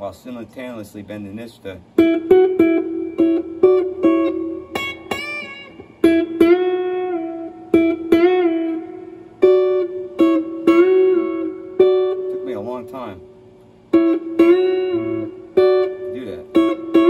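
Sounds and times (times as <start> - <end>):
electric guitar bending notes: 1.8 - 17.0.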